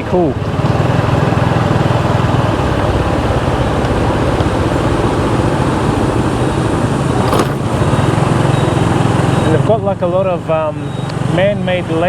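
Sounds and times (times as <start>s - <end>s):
motorbike engine: 0.3s - 9.7s.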